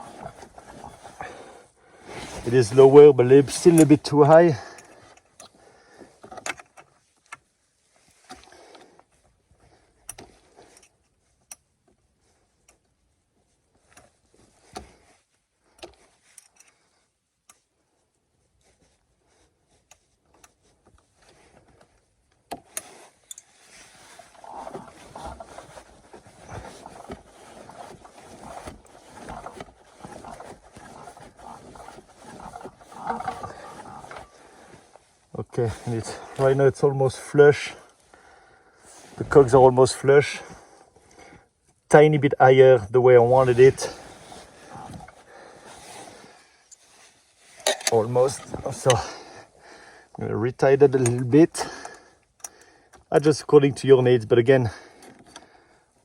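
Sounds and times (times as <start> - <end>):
drive belt rubbing in clutch: 23.8 - 37.0
tools clicking and knocking: 47.6 - 48.0.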